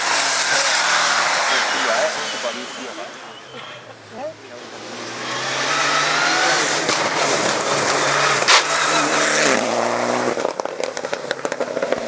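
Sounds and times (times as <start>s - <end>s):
rally car engine passing: 0.0s - 12.0s
exhaust pops and crackles: 6.6s - 12.0s.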